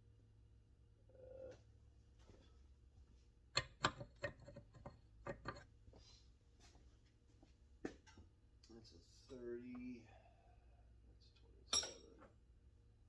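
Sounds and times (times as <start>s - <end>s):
metal tools clinking: 3.6s - 5.6s.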